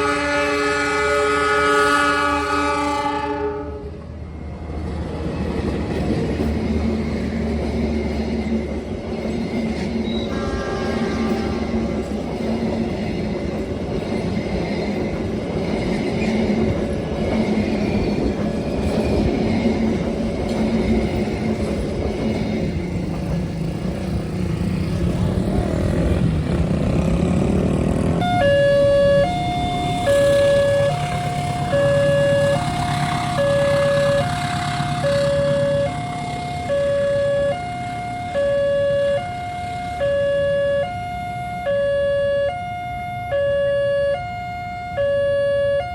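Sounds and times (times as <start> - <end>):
two-tone crossing warning siren: 0.0 - 4.0, 28.1 - 45.9
train rumbling: 0.0 - 45.9.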